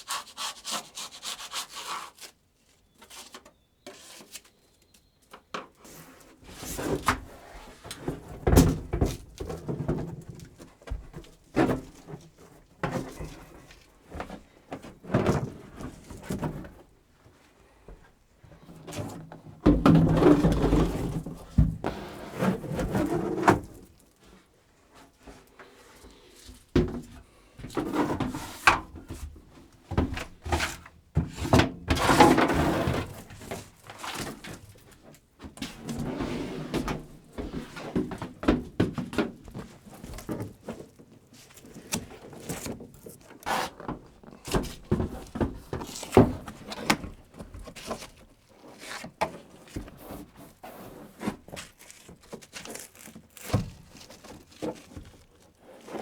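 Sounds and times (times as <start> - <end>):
wall panel thunks and scraping: 19.0 - 24.0.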